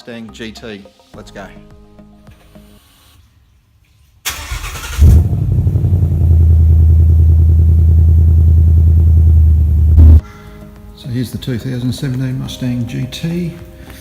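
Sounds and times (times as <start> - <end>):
car engine starting and idling: 4.3 - 10.2.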